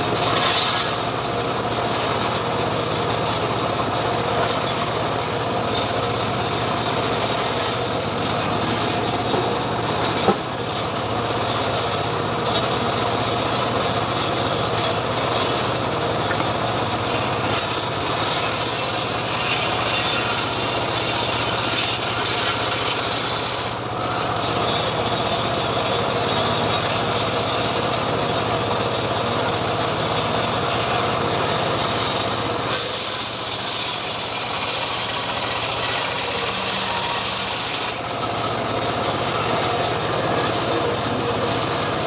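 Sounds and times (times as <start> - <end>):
saw blade rasping on wood: 0.0 - 1.3, 2.0 - 10.6, 13.3 - 23.9, 30.6 - 42.0.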